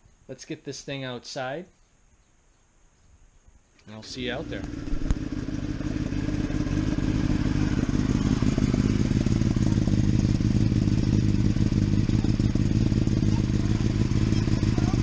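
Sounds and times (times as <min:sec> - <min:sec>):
motorcycle engine idling: 0:03.9 - 0:15.0.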